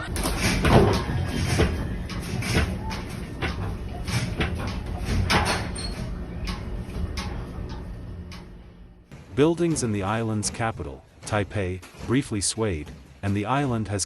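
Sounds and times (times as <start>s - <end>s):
doors and fittings rattling: 0.0s - 14.0s.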